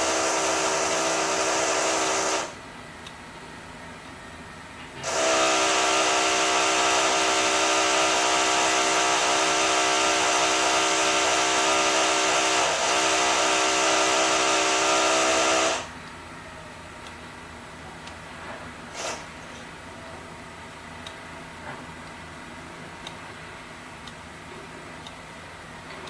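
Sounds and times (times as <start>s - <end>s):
power drill whining: 5.0s - 15.9s.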